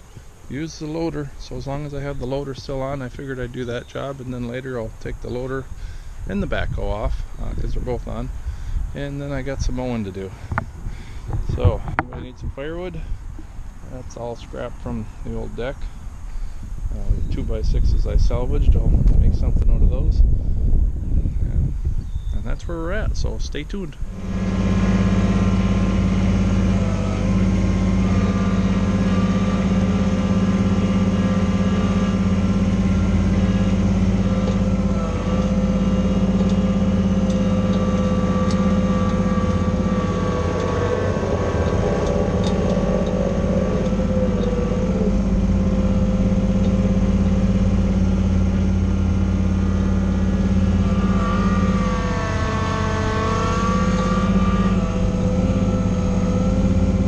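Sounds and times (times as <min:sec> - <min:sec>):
tractor diesel engine running: 0:00.0 - 0:57.0.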